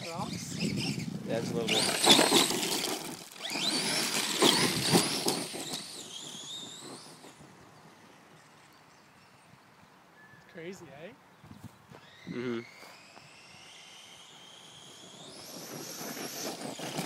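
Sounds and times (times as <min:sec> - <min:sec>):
electric motor whining: 0:00.0 - 0:07.5, 0:12.0 - 0:17.0
gravel scattering under tires: 0:01.3 - 0:07.4, 0:14.4 - 0:17.0.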